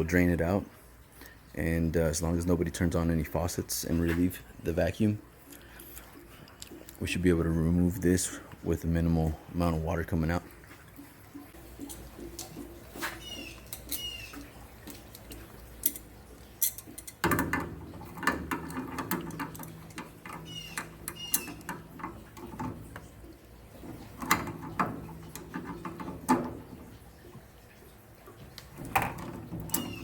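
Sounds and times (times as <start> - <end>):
low steady hum: 0.0 - 30.0
metal tools clicking and knocking: 13.3 - 23.1, 23.8 - 26.8.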